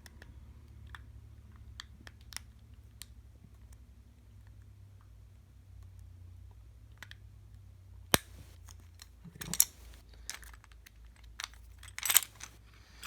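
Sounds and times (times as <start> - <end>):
padlock sharp click: 8.2 - 8.6
lock pick clicks and rattles: 8.2 - 12.6.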